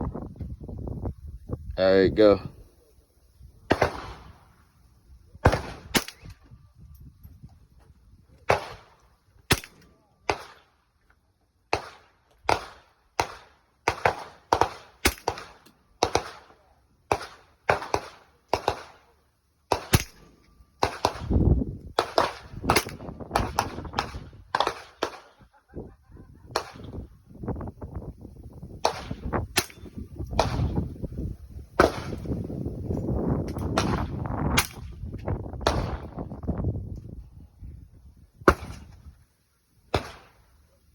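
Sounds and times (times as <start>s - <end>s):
rifle shots: 3.7s - 4.4s, 5.4s - 6.4s, 8.4s - 10.7s, 11.7s - 16.5s, 17.1s - 19.1s, 19.7s - 25.4s, 28.8s - 30.9s, 31.8s - 32.4s, 33.6s - 35.0s, 35.6s - 36.2s, 38.4s - 39.0s, 39.9s - 40.4s.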